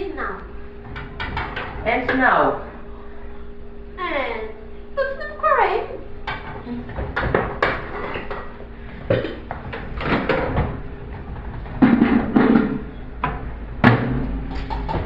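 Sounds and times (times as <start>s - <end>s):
objects knocking and clattering: 0.8s - 2.2s, 6.3s - 15.0s.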